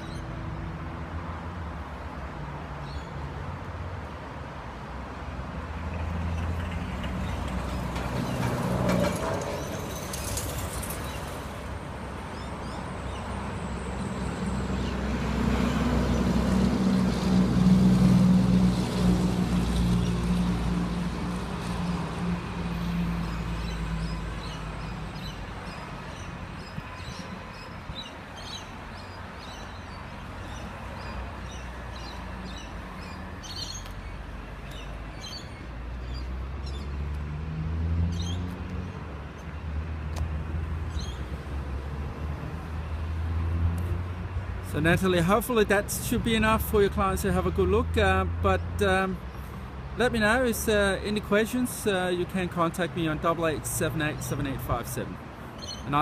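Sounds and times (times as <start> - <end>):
birds chirping: 23.2 - 37.0, 53.8 - 56.0.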